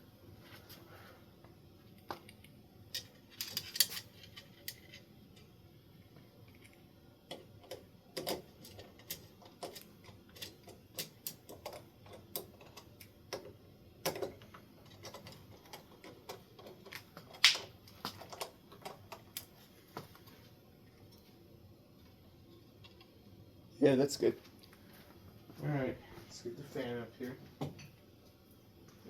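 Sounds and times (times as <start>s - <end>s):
hand tools clicking and tapping metal: 2.2s - 5.0s, 6.5s - 19.5s.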